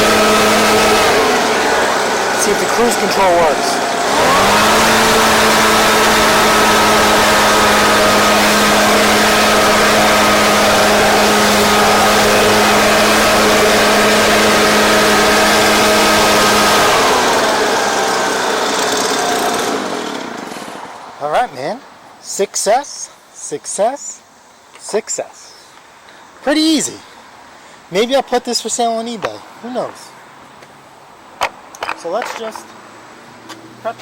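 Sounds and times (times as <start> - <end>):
leaf blower engine running: 0.0 - 20.9.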